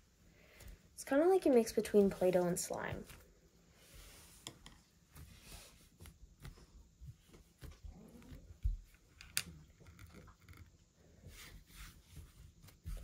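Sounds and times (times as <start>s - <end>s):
modeling dough squishing: 2.9s - 13.0s.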